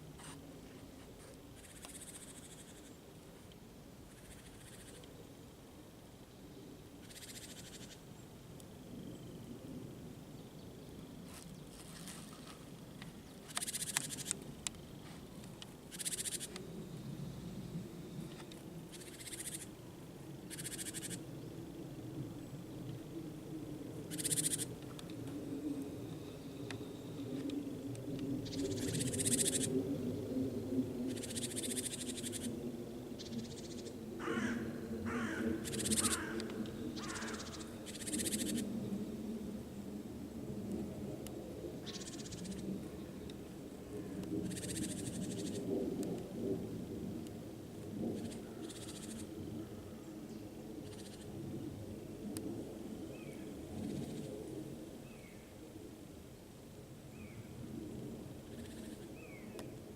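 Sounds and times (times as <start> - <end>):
low nature background: 0.0 - 59.9
steady low rumble: 0.0 - 59.9
raspy animal calls: 15.9 - 16.5, 18.9 - 19.7, 20.5 - 21.2, 34.2 - 36.4.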